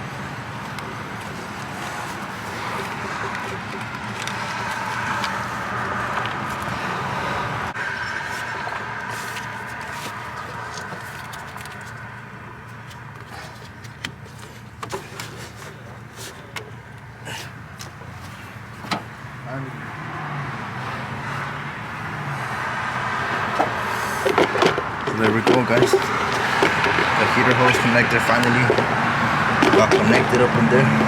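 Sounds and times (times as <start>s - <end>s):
vehicle engine hum: 0.0s - 31.0s.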